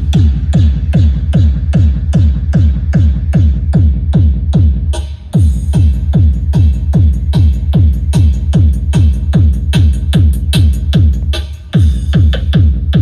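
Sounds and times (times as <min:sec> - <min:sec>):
electronic dance music with kick drum: 0:00.0 - 0:13.0.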